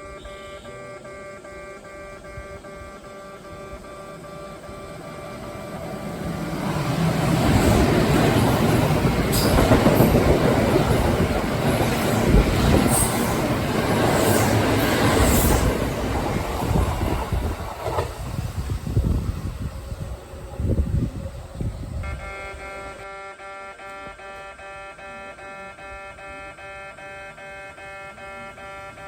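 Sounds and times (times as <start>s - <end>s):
electric train rushing past: 3.4s - 23.0s
wheels clacking over rail joints: 5.4s - 20.6s.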